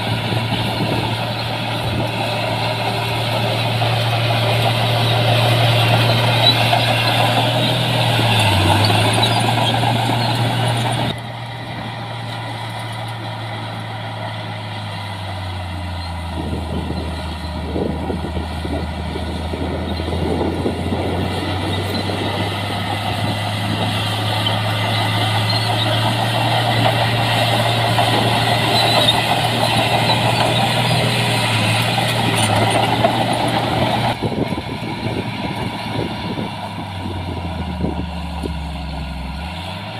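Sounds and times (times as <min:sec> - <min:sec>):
diesel machinery engine drone: 0:00.0 - 0:39.9
machinery clattering: 0:16.3 - 0:37.1.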